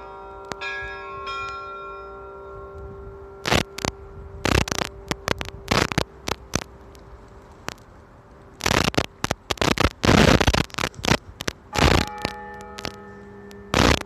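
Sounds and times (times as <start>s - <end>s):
church bell hum: 0.0s - 7.6s, 11.7s - 14.0s
crackling noise bursts: 3.4s - 14.0s.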